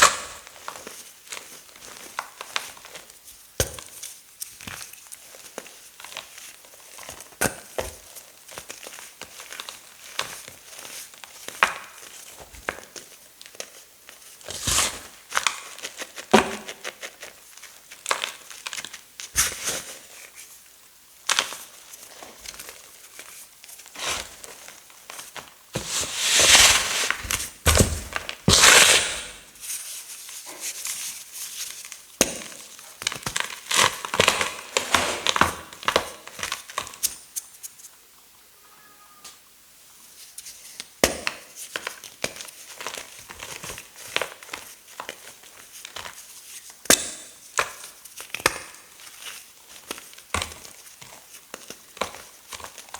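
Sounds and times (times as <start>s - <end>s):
chalk crushed by hand: 25.8s - 30.9s.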